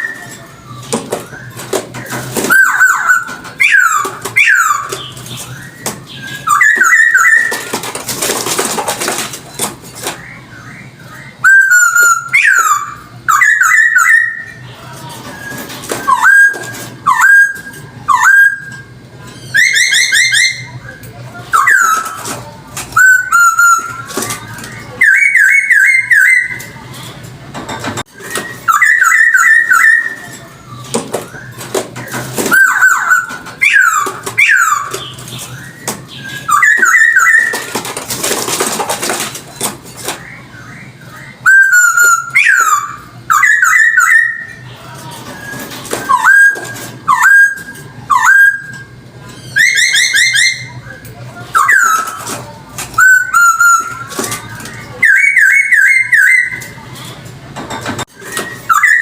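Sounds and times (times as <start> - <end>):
bird singing whistled phrases: 0.0 - 7.7, 10.2 - 14.6, 28.1 - 30.4, 32.5 - 37.7, 40.3 - 44.6, 53.0 - 54.2, 54.8 - 56.8, 58.2 - 59.0.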